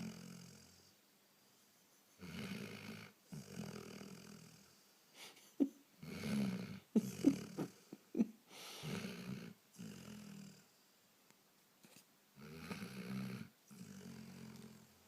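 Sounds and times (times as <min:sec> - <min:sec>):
person snoring: 0:00.0 - 0:00.9, 0:02.2 - 0:04.8, 0:06.0 - 0:08.0, 0:08.6 - 0:10.7, 0:12.4 - 0:14.9.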